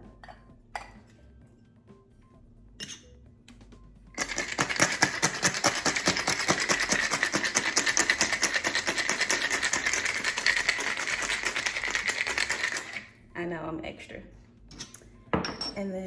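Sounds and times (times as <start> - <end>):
ice rattling in a shaker: 4.2 - 13.1.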